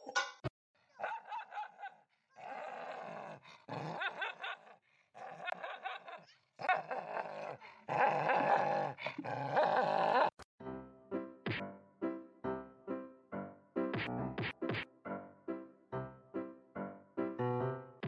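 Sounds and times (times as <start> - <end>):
dog growling: 2.4 - 10.4.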